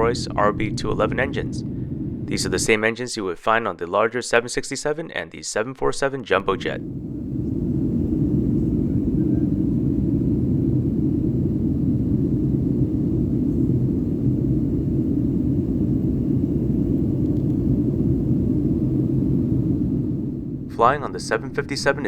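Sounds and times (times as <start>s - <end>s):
aircraft engine noise: 0.0s - 3.0s, 6.4s - 22.0s
airflow over fuselage: 0.0s - 3.0s, 6.4s - 22.0s
faint steady hum: 0.0s - 3.4s, 6.3s - 22.0s.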